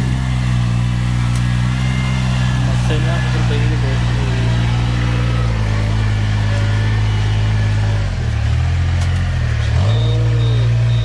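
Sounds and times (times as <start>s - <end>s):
small engine running: 0.0s - 11.0s.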